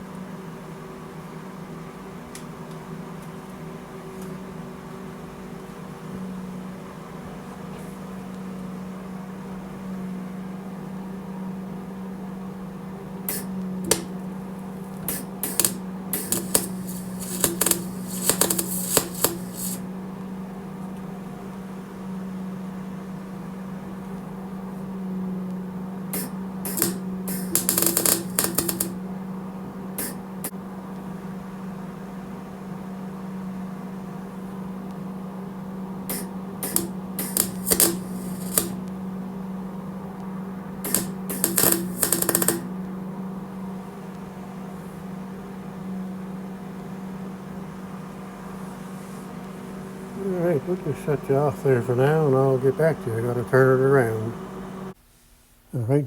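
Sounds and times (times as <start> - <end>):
welder humming: 13.1 - 20.5, 25.1 - 30.5, 35.7 - 44.2, 46.6 - 55.0
sputtering arc crackle: 13.3 - 14.2, 15.0 - 19.9, 26.2 - 29.0, 30.0 - 30.4, 36.1 - 39.0, 40.8 - 42.8, 50.0 - 54.9.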